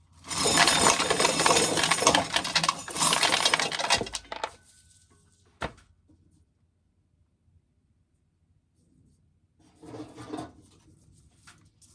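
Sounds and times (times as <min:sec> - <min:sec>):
corn kernels clattering: 0:00.2 - 0:04.6.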